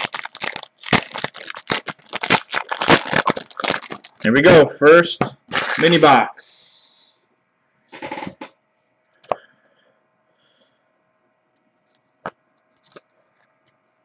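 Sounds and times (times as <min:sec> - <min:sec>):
card pack rustling: 0:00.0 - 0:04.4, 0:05.5 - 0:06.0, 0:12.7 - 0:13.8.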